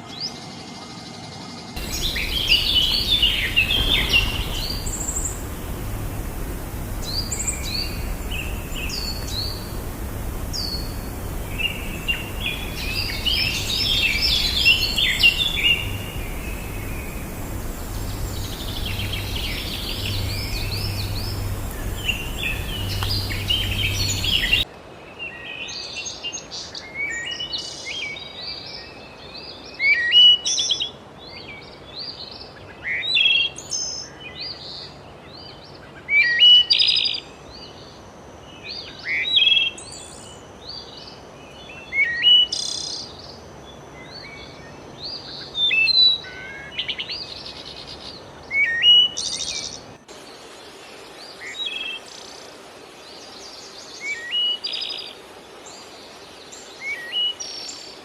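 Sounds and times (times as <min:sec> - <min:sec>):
birds chirping and whistling: 0:01.8 - 0:24.6
steady low rumble: 0:01.8 - 0:24.6.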